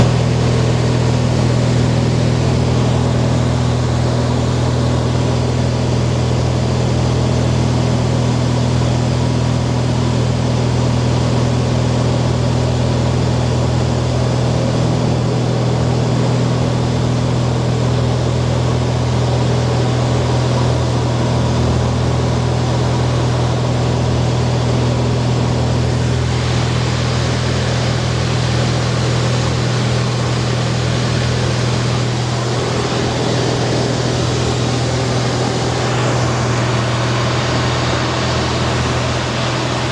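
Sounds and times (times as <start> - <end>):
light aircraft engine droning: 0.0 - 39.9.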